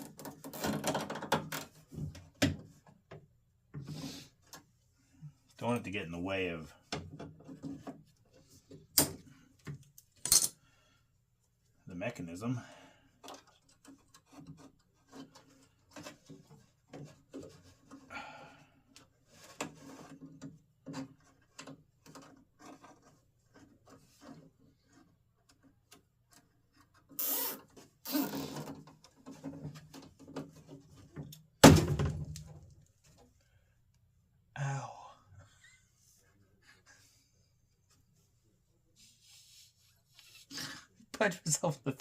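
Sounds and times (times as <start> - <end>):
zip ties ratcheting: 27.2 - 28.4.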